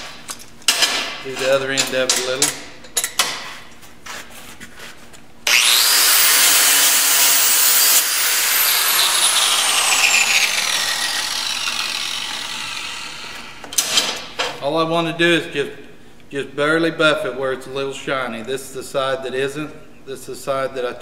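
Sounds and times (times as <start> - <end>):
angle grinder whining: 5.4 - 13.7.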